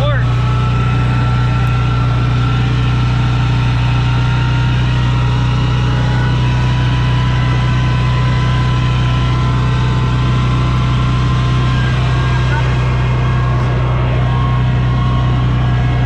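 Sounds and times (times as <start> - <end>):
vehicle engine droning: 0.0 - 16.0.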